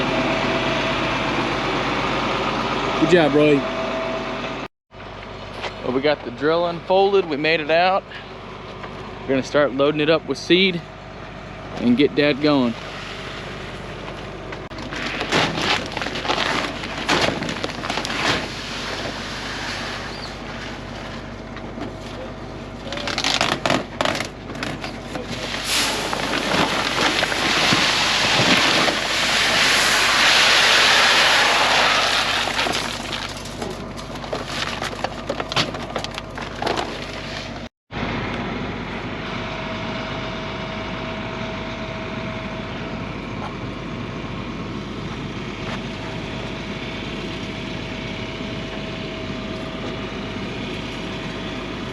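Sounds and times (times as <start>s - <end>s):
seed pouring: 25.5s - 33.4s.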